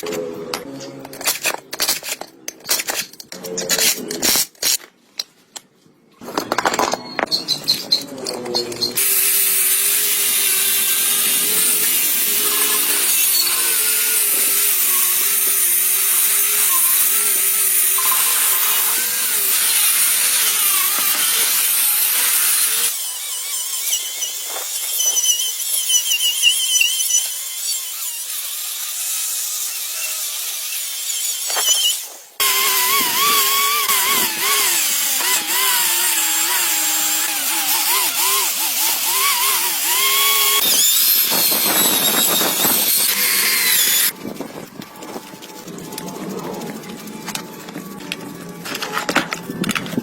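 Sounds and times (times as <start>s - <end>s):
power tool hissing and whining: 9.0s - 44.1s.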